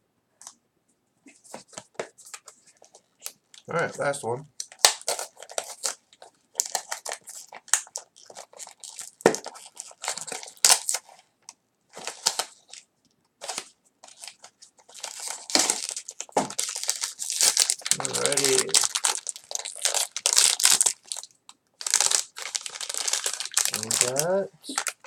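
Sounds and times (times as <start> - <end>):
packaging being torn and crumpled: 4.6 - 11.2, 12.0 - 25.0.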